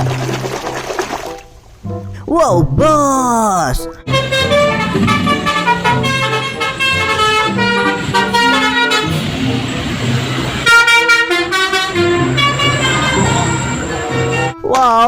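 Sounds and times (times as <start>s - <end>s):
multi-tone bus horn melody: 4.1s - 14.6s.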